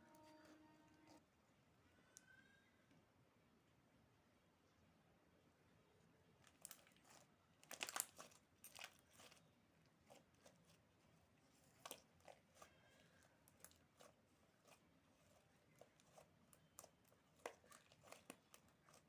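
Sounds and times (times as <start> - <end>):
slime crackling and popping: 6.5 - 9.3.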